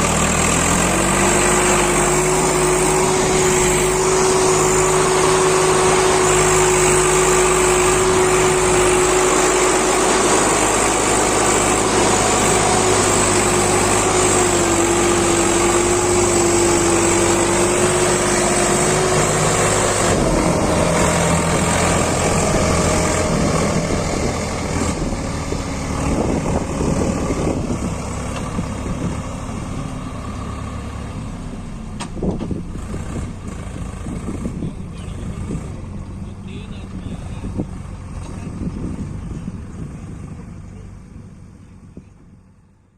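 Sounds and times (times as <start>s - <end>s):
engine whine: 0.0s - 42.9s
tractor diesel engine running: 0.0s - 42.9s.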